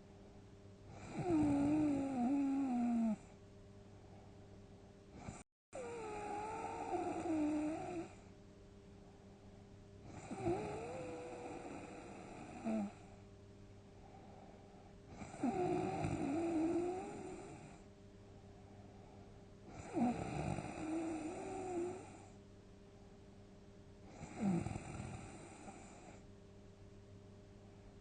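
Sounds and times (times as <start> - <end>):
quiet breathing: 0.0 - 23.3, 24.0 - 26.4
person snoring: 0.9 - 3.2, 5.2 - 8.2, 10.1 - 13.0, 15.1 - 17.8, 19.7 - 22.3, 24.1 - 26.1.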